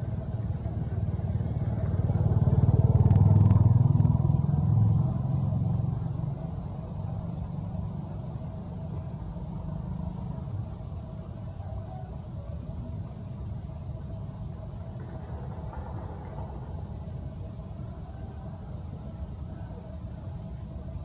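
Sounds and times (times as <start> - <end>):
vehicle engine passing by: 0.9 - 7.9.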